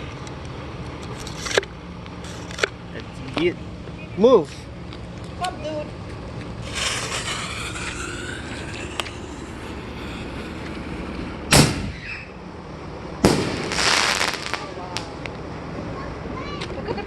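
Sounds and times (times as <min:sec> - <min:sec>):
firework fuse sizzling: 0:06.5 - 0:12.5, 0:13.2 - 0:15.3
hiss after firework burst: 0:06.6 - 0:12.1, 0:13.2 - 0:15.2
deep thump of shell launching: 0:11.5 - 0:12.0, 0:13.2 - 0:13.8
sharp firework bang: 0:11.5 - 0:12.2, 0:13.2 - 0:15.1.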